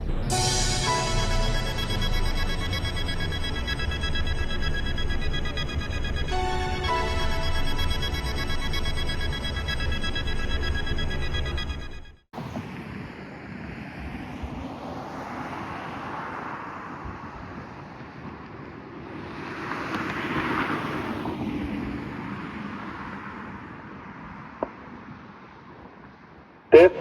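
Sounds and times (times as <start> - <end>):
road traffic: 0.0 - 12.8, 13.8 - 27.0
wind on microphone: 12.4 - 22.9
car passing: 12.4 - 25.9.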